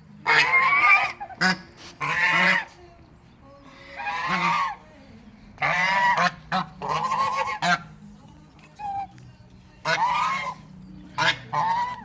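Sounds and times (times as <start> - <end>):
goose honking: 0.2 - 2.7, 4.0 - 4.8, 5.6 - 7.9, 9.8 - 12.0.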